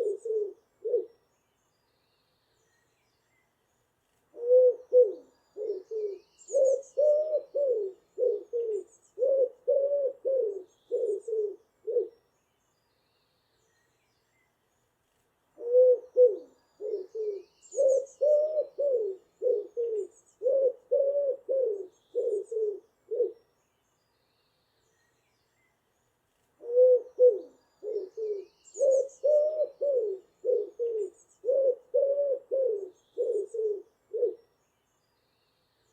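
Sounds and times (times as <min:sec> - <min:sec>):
pigeon cooing: 0:00.0 - 0:01.1, 0:04.4 - 0:12.1, 0:15.6 - 0:23.4, 0:26.6 - 0:34.4
small birds chirping: 0:00.0 - 0:09.8, 0:16.0 - 0:20.8, 0:21.6 - 0:32.0, 0:32.6 - 0:35.9.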